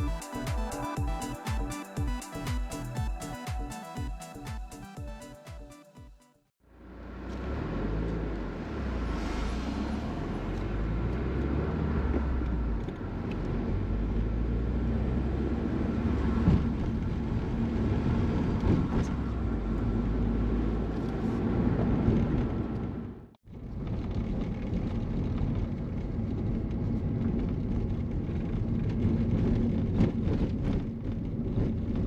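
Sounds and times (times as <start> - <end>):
car road and engine rumble: 6.7 - 32.0.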